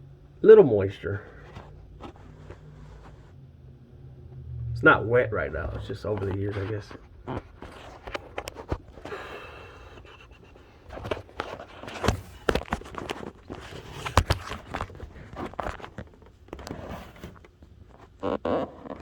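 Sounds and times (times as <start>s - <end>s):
knocks clicks and scuffs: 10.9s - 16.1s.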